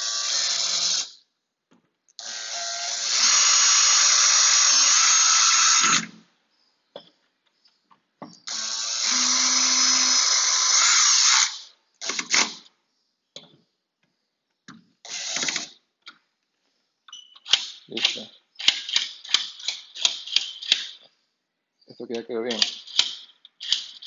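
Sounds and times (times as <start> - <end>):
power drill whining: 0.0 - 1.2, 2.2 - 6.2, 8.4 - 12.7, 15.1 - 15.8
short clicks and rattles: 17.3 - 21.1, 22.1 - 24.0.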